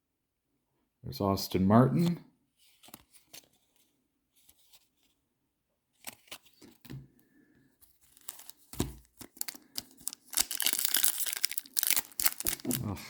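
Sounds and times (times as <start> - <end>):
foil wrapper crinkling and tearing: 7.9 - 13.0.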